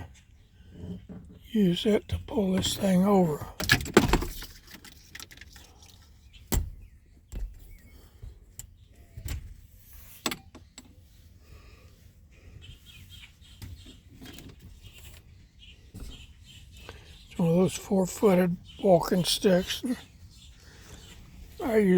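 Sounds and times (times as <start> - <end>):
sharp knocks and clunks: 3.6 - 4.9, 6.4 - 8.4
faint bird chirps: 5.6 - 21.9.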